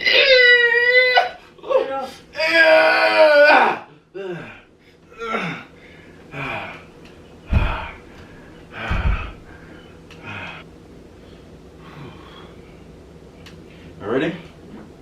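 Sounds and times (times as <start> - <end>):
man grunting and gasping: 4.2 - 5.7, 7.5 - 8.1, 8.7 - 9.5.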